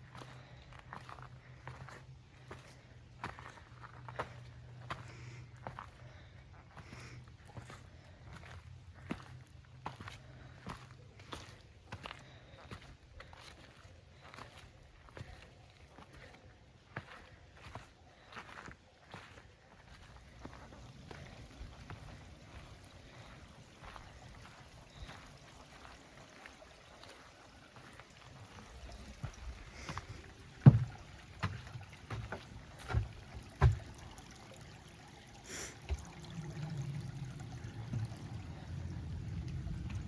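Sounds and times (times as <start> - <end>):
footsteps on rocky trail: 0.2 - 16.4, 17.0 - 34.0
low rumble: 36.0 - 40.0.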